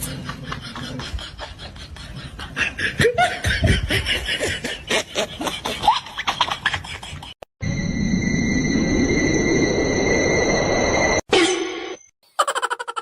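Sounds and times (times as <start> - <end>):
person laughing: 0.0 - 7.4, 12.3 - 13.0.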